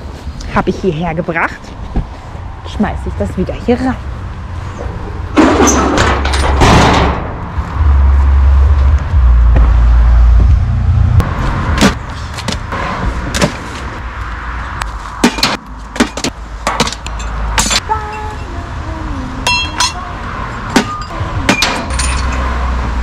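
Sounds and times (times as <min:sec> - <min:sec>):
low rumble: 0:04.0 - 0:13.2
knocks and thuds: 0:05.3 - 0:07.4, 0:09.5 - 0:10.6.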